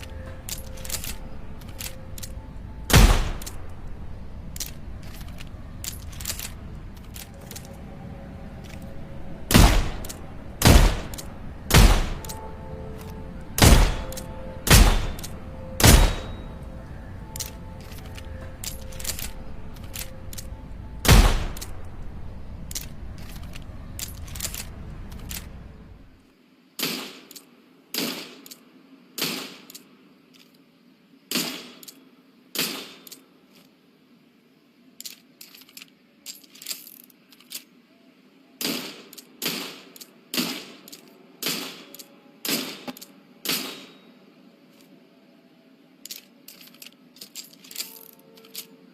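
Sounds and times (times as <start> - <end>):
sharp metallic clicks: 0.0 - 7.8, 8.6 - 25.8
low rumble: 0.0 - 26.2
revolver gunshot: 2.9 - 3.5, 9.5 - 12.2, 13.6 - 15.2, 15.8 - 16.5, 21.0 - 21.6.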